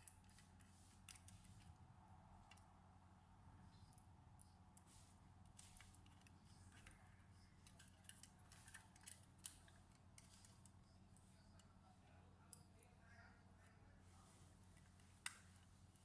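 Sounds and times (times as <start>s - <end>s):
hands clicking on laptop parts: 5.5s - 10.8s, 14.8s - 16.0s.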